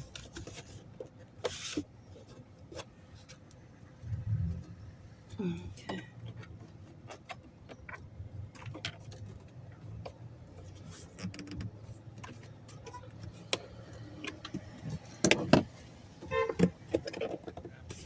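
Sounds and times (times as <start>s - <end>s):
steady low hum: 4.0s - 5.8s.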